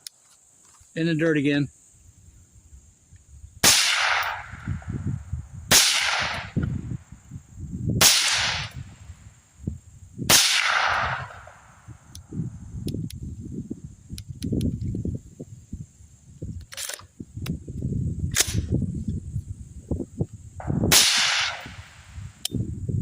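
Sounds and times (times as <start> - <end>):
suppressed rifle shots: 3.6 - 4.9, 5.7 - 6.6, 8.0 - 8.8, 10.3 - 11.7, 18.3 - 18.7, 20.6 - 22.1.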